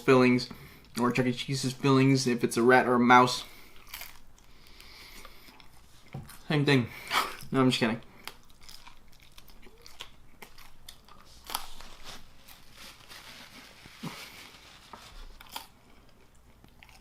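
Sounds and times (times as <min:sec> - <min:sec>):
food packaging crinkling: 0:08.2 - 0:17.0.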